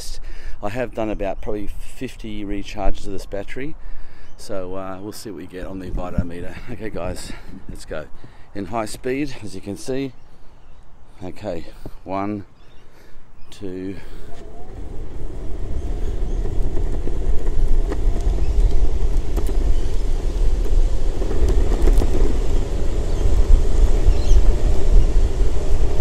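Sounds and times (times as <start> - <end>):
wind buffeting microphone: 5.6 - 9.1, 14.0 - 26.0
wheels rumbling on road: 13.6 - 26.0.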